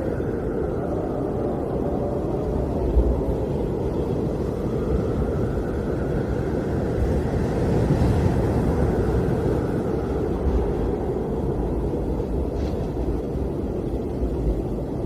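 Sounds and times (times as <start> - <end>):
blizzard wind rushing: 0.0 - 15.0.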